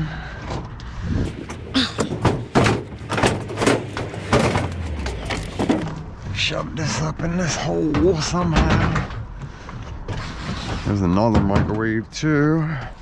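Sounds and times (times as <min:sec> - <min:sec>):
hollow metal clunks and bangs: 0:01.3 - 0:06.0, 0:07.6 - 0:09.5, 0:11.0 - 0:12.0.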